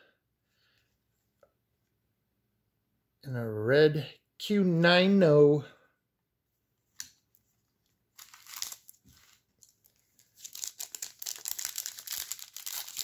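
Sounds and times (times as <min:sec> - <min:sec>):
foil wrapper crinkling: 0:08.2 - 0:13.0.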